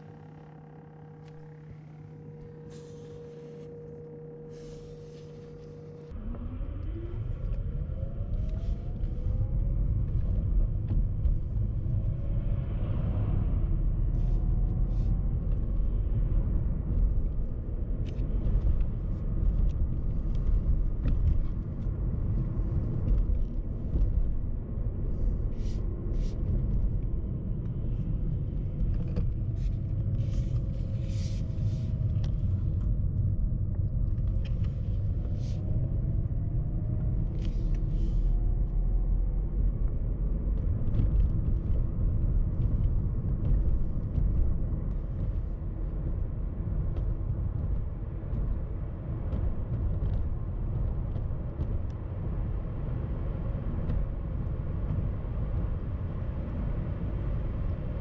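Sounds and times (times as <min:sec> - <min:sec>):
faint rising whine: 0:00.0 - 0:09.9
road and wind noise in car: 0:06.1 - 0:58.0.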